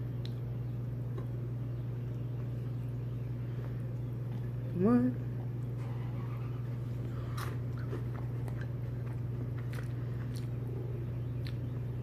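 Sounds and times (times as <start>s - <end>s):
steady low hum: 0.0s - 12.0s
person chewing crunchy cereal: 5.5s - 11.8s.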